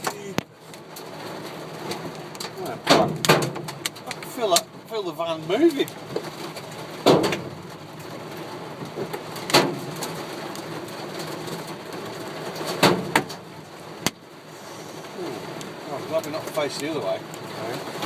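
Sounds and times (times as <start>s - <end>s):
hiss of falling hail and rain: 0.0s - 18.0s
hailstones banging on metal roof: 1.0s - 4.7s, 5.3s - 7.7s, 8.8s - 11.7s, 12.4s - 14.2s.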